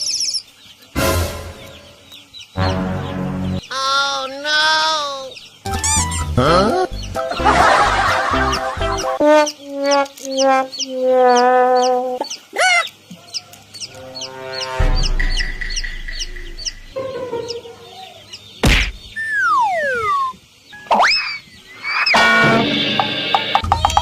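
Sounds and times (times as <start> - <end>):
background music: 1.0 - 2.0, 2.6 - 3.7, 5.7 - 9.2, 13.8 - 18.0
sharp bang: 1.0 - 2.0, 14.6 - 17.0, 18.6 - 19.2
cartoon animal calls: 3.7 - 12.9, 19.1 - 22.3
held pitched tone: 13.9 - 18.2, 19.2 - 21.3
low rumble: 14.6 - 17.0
falling whistles: 19.0 - 22.6.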